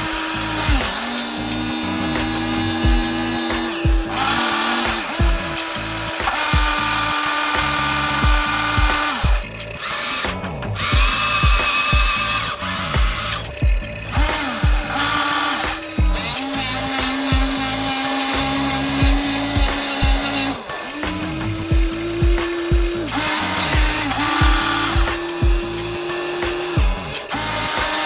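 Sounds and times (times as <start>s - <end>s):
music with thumping beat: 0.0s - 28.0s
small electric motors whining: 0.0s - 28.0s.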